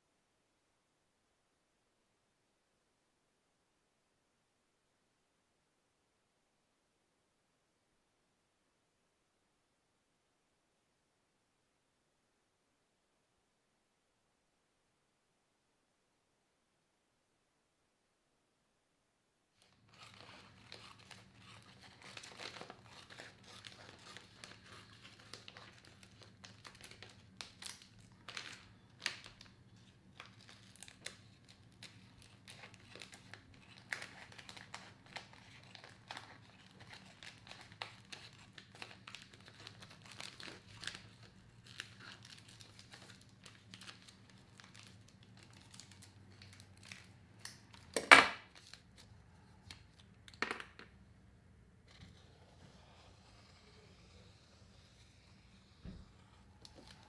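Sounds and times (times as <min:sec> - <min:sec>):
crinkling and scraping leather: 0:19.6 - 0:26.0.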